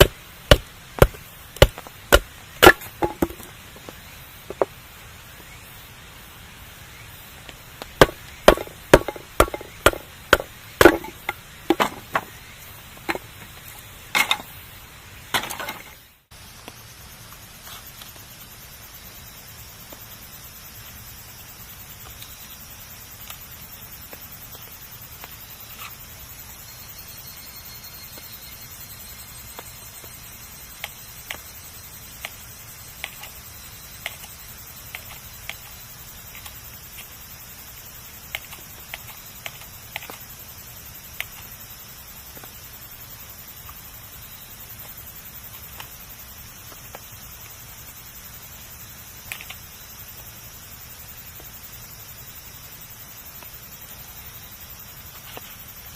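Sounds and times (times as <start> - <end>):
campfire crackling and popping: 0.0 - 4.7, 7.4 - 12.1
soft fire hiss: 0.0 - 27.1, 28.1 - 55.9.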